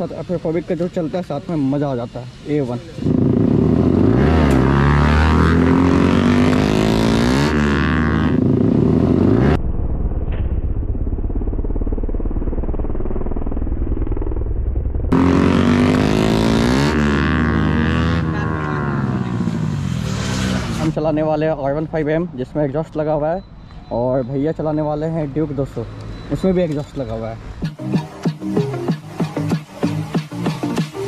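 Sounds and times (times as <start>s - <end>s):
motorcycle revving: 0.0s - 9.6s, 10.6s - 21.2s.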